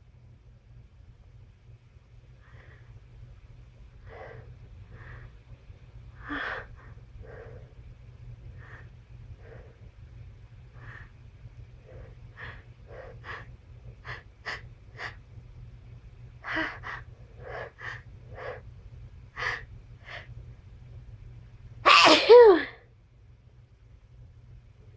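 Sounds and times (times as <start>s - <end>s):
person sneezing: 21.9s - 22.8s.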